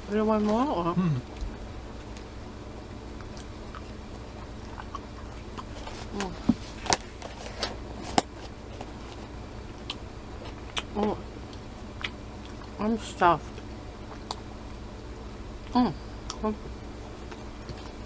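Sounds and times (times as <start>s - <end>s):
person humming: 0.9s - 1.3s, 15.7s - 16.6s
biting and chewing food: 3.1s - 12.8s, 13.4s - 14.8s, 17.0s - 18.0s.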